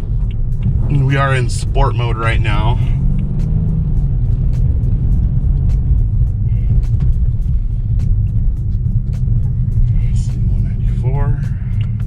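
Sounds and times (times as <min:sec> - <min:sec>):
car cabin road and engine rumble: 0:00.0 - 0:12.0.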